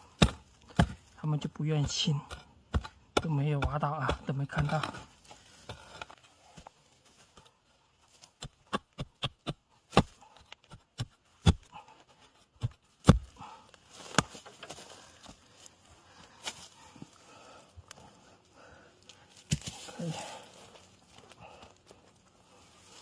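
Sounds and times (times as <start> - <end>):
digging tool chopping ground: 0.0 - 6.7, 8.2 - 15.4, 19.3 - 20.5.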